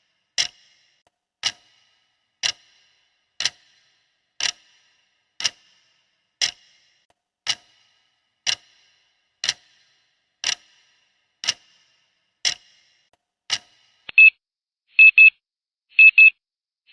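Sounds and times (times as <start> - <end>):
timer ticking: 0.0 - 14.3
electronic alarm beeping: 14.1 - 14.4, 15.0 - 15.4, 16.0 - 16.4.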